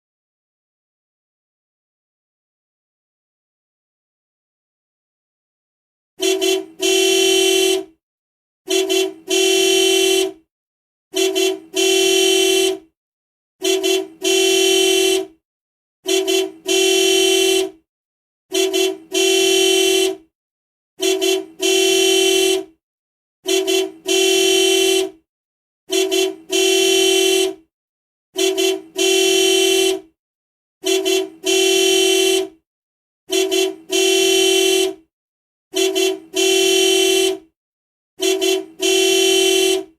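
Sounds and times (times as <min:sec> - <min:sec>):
car horn honking: 0:06.2 - 0:08.0, 0:08.7 - 0:10.4, 0:11.1 - 0:12.9, 0:13.6 - 0:15.4, 0:16.0 - 0:17.8, 0:18.5 - 0:20.3, 0:21.0 - 0:22.8, 0:23.4 - 0:25.2, 0:25.9 - 0:27.7, 0:28.4 - 0:30.2, 0:30.8 - 0:32.6, 0:33.3 - 0:35.1, 0:35.7 - 0:37.5, 0:38.2 - 0:39.9.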